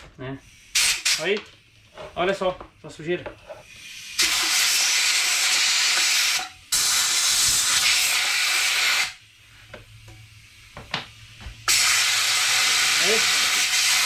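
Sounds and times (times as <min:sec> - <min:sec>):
compressed air nozzle hissing: 0:00.4 - 0:01.3, 0:03.6 - 0:09.6, 0:10.4 - 0:14.0.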